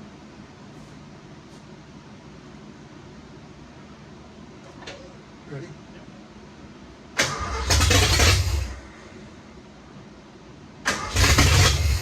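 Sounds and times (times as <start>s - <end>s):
engine cranking: 7.2s - 8.8s, 10.9s - 12.0s
sharp starter click: 7.2s - 8.8s, 10.9s - 12.0s.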